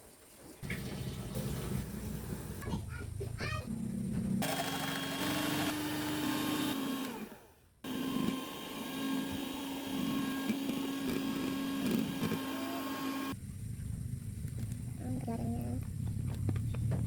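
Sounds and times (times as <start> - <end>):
electric hand mixer running: 4.4 - 13.4.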